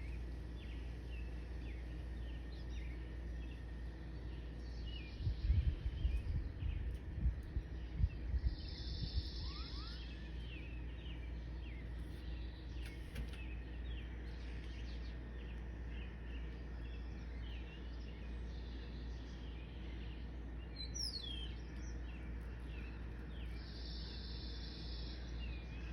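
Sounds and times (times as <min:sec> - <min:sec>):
low rumble: 0:00.0 - 0:18.4
wild birds chirping: 0:00.0 - 0:25.9.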